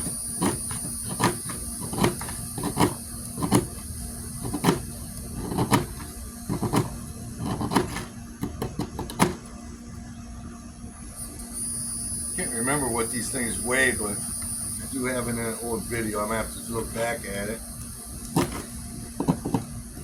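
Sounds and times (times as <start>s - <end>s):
hand tool scraping hard clay: 0.0s - 9.5s, 18.2s - 19.8s.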